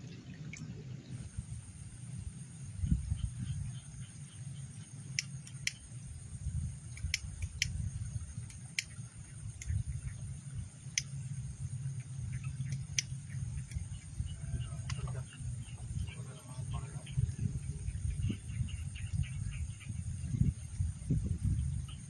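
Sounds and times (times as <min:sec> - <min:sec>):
faint chirps: 0:00.0 - 0:22.0
high insect drone: 0:00.0 - 0:22.0
low rumble: 0:00.0 - 0:22.0
sharp clicks: 0:05.1 - 0:05.9, 0:06.9 - 0:07.8, 0:08.4 - 0:09.8, 0:10.9 - 0:11.2, 0:12.6 - 0:14.0.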